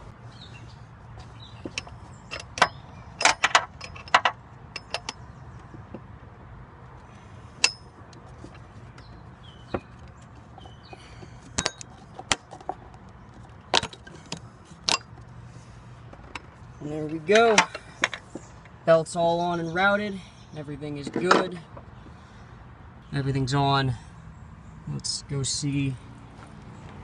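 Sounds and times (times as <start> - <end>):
wrench clinking on metal: 1.7 - 5.2, 11.5 - 12.0.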